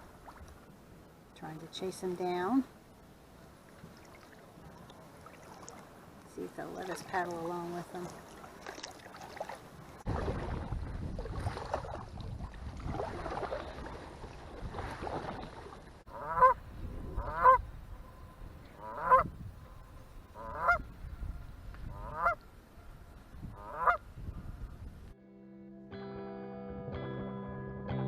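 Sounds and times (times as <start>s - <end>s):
water noise: 0.0s - 25.1s
low wind rumble: 9.6s - 25.2s
geese honking: 16.1s - 16.6s, 17.2s - 17.6s, 18.8s - 19.3s, 20.4s - 20.8s, 21.9s - 22.4s, 23.6s - 24.0s.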